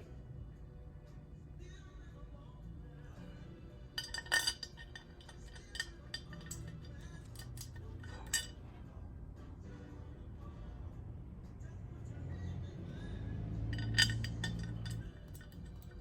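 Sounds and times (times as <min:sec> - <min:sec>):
small metal parts clinking: 0:04.0 - 0:08.6, 0:13.7 - 0:16.0.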